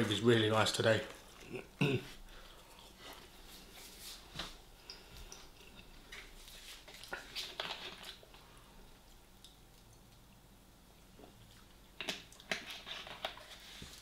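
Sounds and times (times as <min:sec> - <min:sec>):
chewing and wet mouth sounds: 0:01.2 - 0:03.4, 0:04.8 - 0:13.7.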